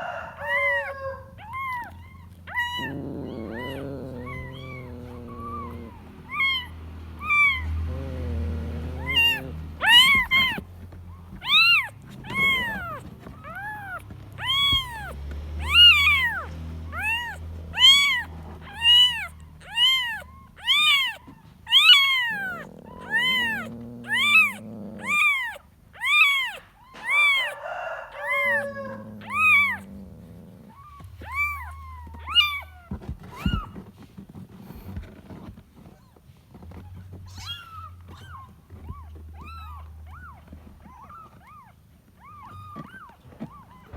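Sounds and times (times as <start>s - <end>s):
kitten meowing: 0.4s - 33.8s, 37.2s - 43.9s
lower deeper meowing calls: 0.5s - 27.6s.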